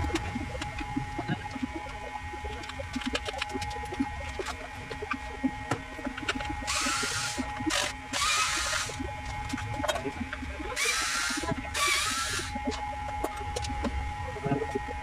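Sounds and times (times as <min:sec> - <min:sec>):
electric screwdriver whirring: 0:06.7 - 0:09.0, 0:10.8 - 0:12.6.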